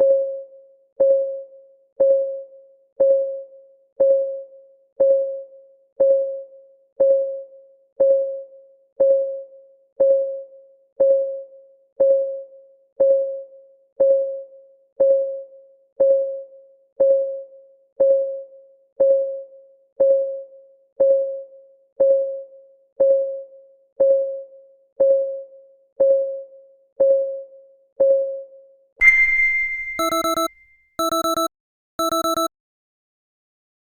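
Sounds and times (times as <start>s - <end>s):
clock ticking: 30.0s - 32.5s.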